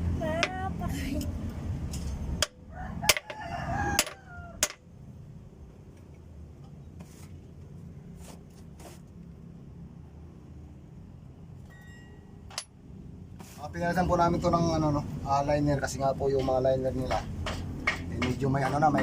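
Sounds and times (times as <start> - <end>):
low steady hum: 0.0 - 19.0
rooster crowing: 2.6 - 4.8
sharp knocks: 16.4 - 19.0.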